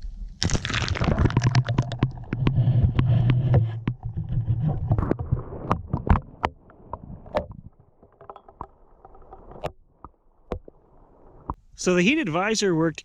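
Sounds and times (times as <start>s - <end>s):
muffled underwater rumble: 0.0s - 8.2s
underwater clicks and knocks: 0.4s - 11.6s.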